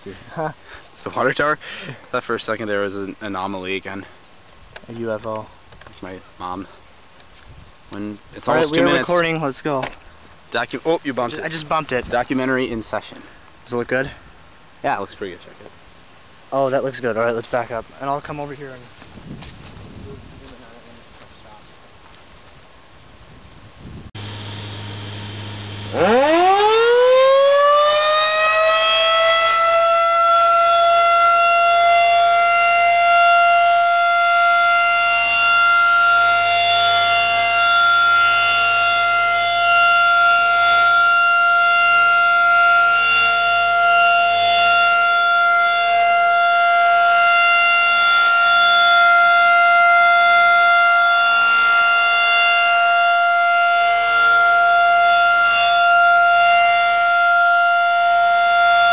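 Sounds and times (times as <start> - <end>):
low hum: 24.2 - 27.1
siren winding up and wailing: 24.2 - 33.8.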